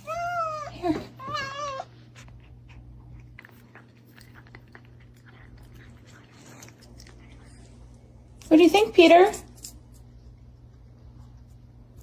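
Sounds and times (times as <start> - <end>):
cat meowing: 0.0 - 1.9
faint small clicks and crunching: 2.2 - 12.0.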